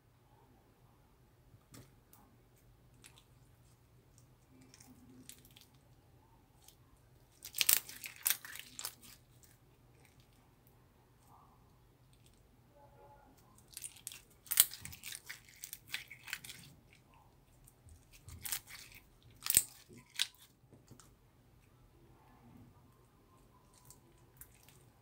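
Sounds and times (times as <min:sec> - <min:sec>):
slime crackling and popping: 0:07.3 - 0:10.3, 0:13.6 - 0:17.1, 0:17.8 - 0:20.5.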